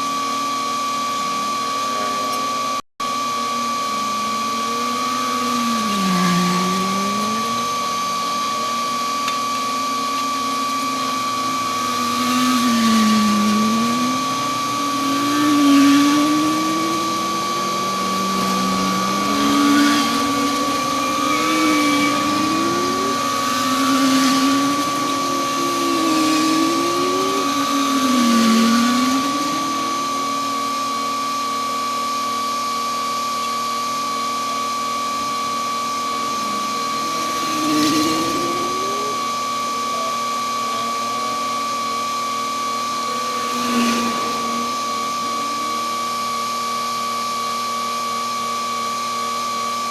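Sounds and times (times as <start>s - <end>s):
paving machinery engine: 0.0s - 49.9s
steady high whine: 0.0s - 49.9s.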